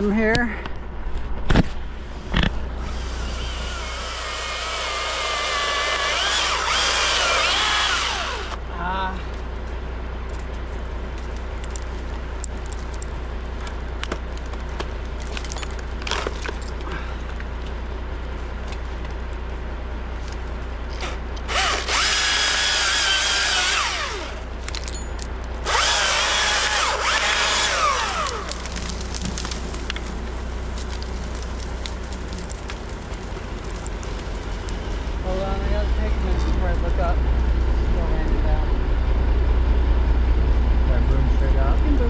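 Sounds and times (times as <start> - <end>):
low engine hum: 0.0 - 42.0
chainsaw revving: 2.8 - 8.6, 21.0 - 24.4, 25.6 - 28.9.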